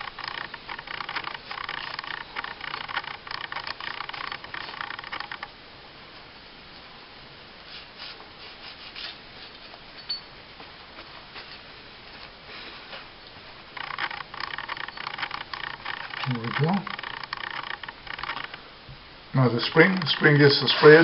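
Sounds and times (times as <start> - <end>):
loud scratchy noise: 0.0 - 5.5, 13.7 - 18.6, 19.4 - 21.0
rubbing and scraping metal parts: 13.8 - 18.6, 19.6 - 21.0.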